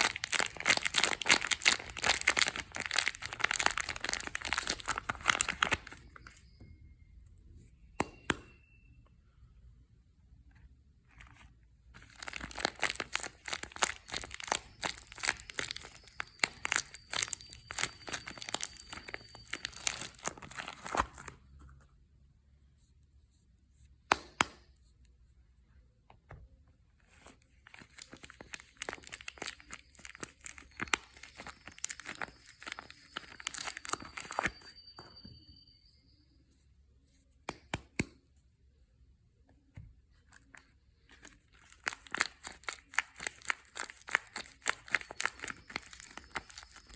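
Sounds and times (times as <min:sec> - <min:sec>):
soap wrapping crinkling: 0:00.0 - 0:06.5, 0:11.2 - 0:21.4, 0:27.2 - 0:35.1, 0:40.1 - 0:46.9.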